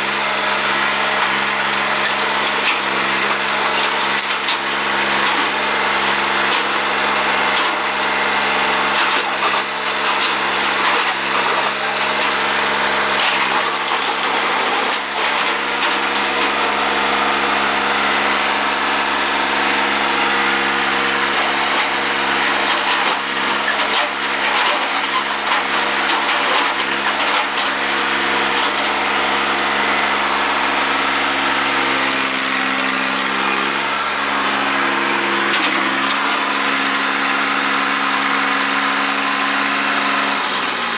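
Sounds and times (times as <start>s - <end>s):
tractor diesel engine running: 0.0s - 40.9s
clicks and crunches: 21.4s - 27.8s.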